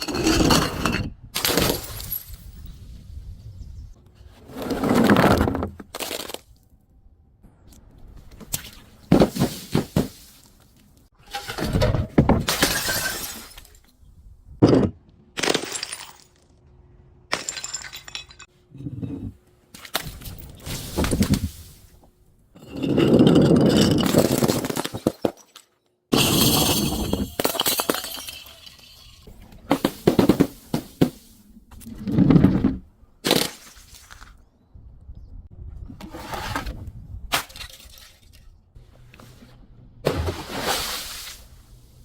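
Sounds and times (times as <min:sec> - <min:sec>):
glass bottles breaking: 0:12.4 - 0:13.8, 0:15.4 - 0:16.4, 0:17.3 - 0:18.5, 0:23.0 - 0:31.2.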